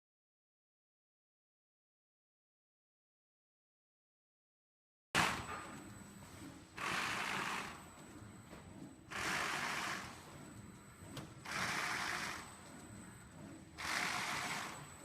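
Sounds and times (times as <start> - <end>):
faint machine hum: 5.2 - 15.0.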